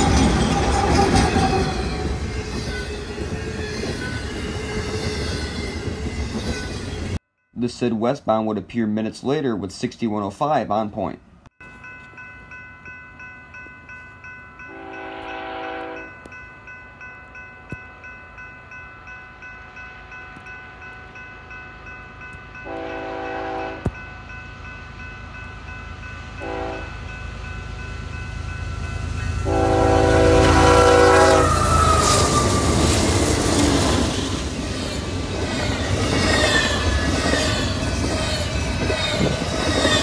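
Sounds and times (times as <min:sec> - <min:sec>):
train rumble and wheel noise: 0:00.0 - 0:07.2, 0:11.7 - 0:40.0
crossing bell ringing: 0:11.6 - 0:40.0
locomotive air horn blasts: 0:14.7 - 0:16.1, 0:22.7 - 0:23.9, 0:26.4 - 0:27.0, 0:29.4 - 0:32.2.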